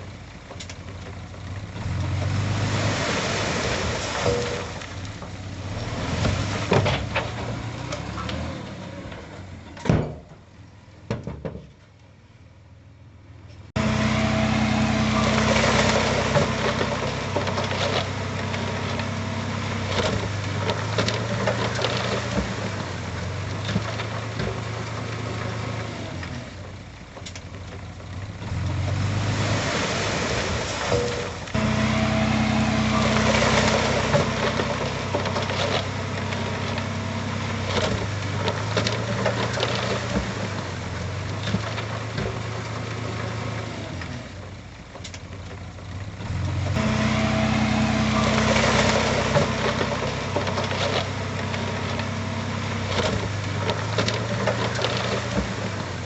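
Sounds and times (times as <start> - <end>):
heavy diesel engine under load: 0.0 - 56.0.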